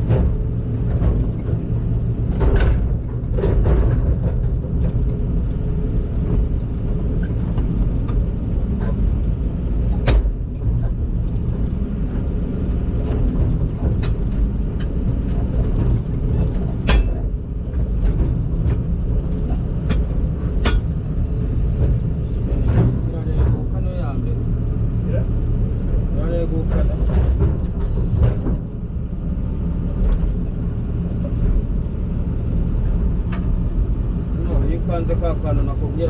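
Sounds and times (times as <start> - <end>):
heavy vehicle engine rumbling: 0.0 - 36.0
sharp knocks or clanks: 13.1 - 18.8, 19.5 - 21.0.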